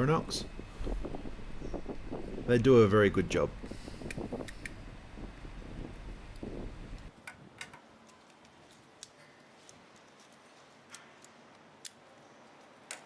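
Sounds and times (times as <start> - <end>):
handling rustle: 8.0 - 11.7.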